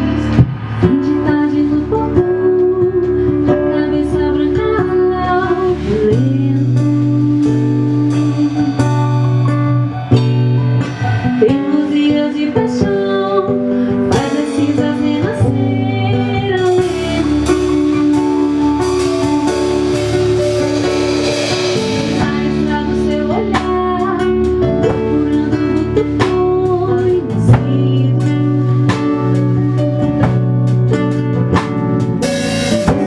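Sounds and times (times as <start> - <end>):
band playing a song: 0.0 - 33.0
cymbals washing: 13.6 - 33.0.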